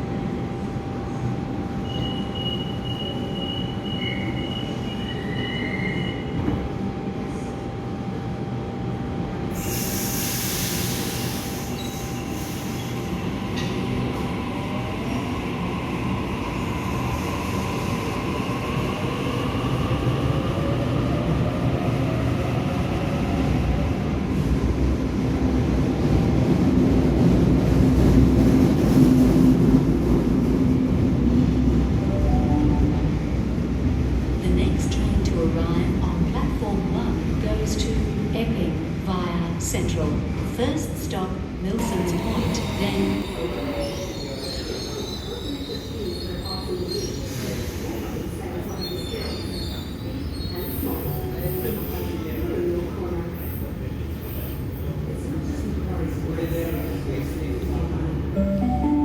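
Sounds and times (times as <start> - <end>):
air hiss: 9.6 - 13.0.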